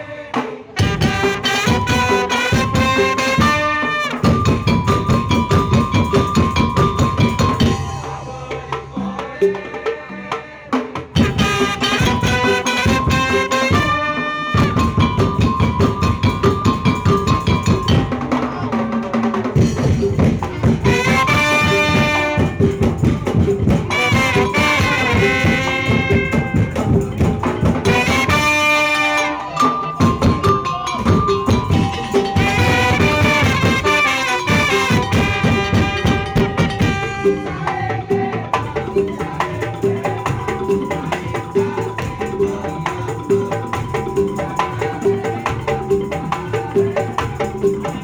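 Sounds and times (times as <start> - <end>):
percussion ensemble steady beat: 0.0 - 48.0
melody with bending notes: 1.6 - 8.3, 19.6 - 37.8.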